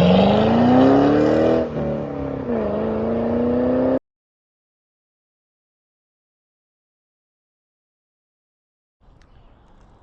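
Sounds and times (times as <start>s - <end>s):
car engine accelerating: 0.0s - 4.0s.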